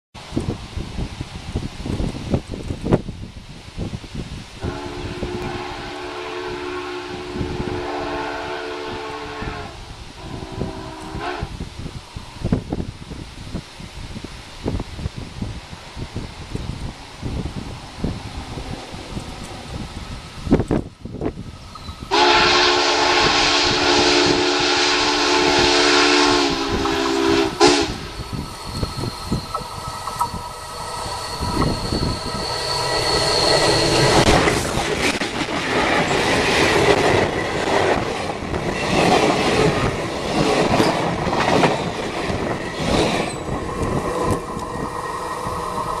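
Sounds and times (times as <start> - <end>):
steam locomotive chime whistle: 4.6 - 11.5, 21.8 - 34.5, 43.2 - 46.0
train rail clatter: 26.6 - 46.0.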